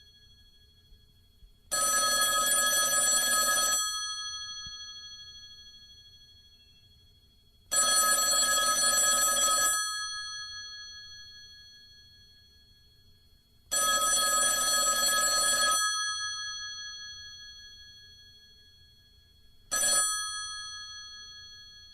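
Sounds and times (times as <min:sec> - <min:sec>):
telephone bell ringing: 0:01.7 - 0:06.7, 0:07.7 - 0:12.3, 0:13.7 - 0:18.4, 0:19.7 - 0:21.9.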